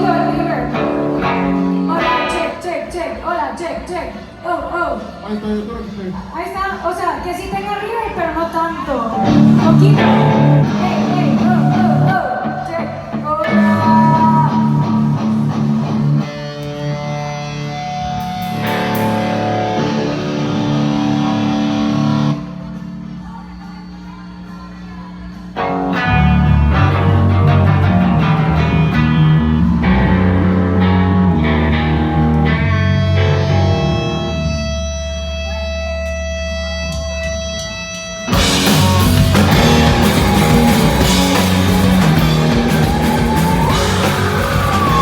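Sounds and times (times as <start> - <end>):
electric guitar through amplifier: 0.0 - 3.2, 8.8 - 23.3, 24.3 - 45.0
band playing with heavy bass: 9.2 - 12.2, 25.6 - 35.4, 38.1 - 45.0.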